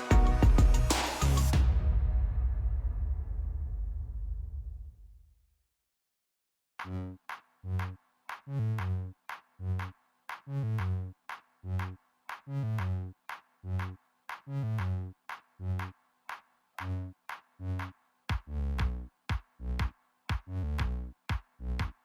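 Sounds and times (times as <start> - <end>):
electronic music with drum machine: 0.0 - 1.7.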